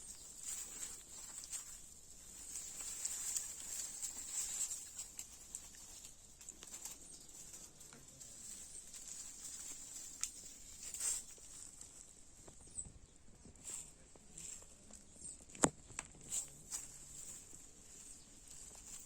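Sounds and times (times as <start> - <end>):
small crackles and rustles: 0.0 - 19.0
steady high-pitched hiss: 0.0 - 19.0.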